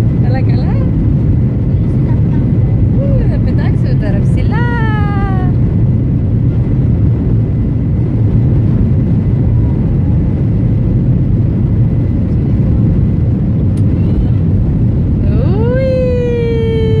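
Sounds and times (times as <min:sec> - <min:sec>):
airliner cabin engine rumble: 0:00.0 - 0:17.0.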